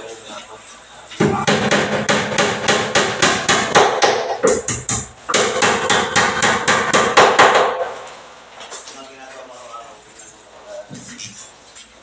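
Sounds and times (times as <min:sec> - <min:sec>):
hammer striking rapidly: 0:01.2 - 0:08.0.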